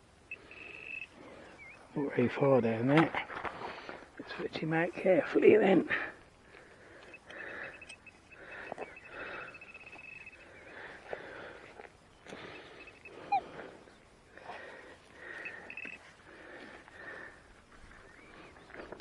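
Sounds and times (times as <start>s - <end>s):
rapid high pulsing beep: 0.3s - 1.8s, 7.1s - 10.7s, 12.5s - 13.4s, 15.4s - 16.0s
soil scraping and rustling: 2.0s - 7.1s.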